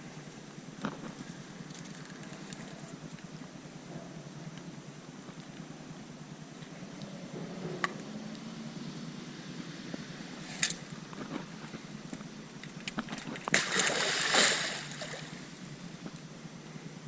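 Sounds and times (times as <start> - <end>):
water splashing: 13.0 - 15.7.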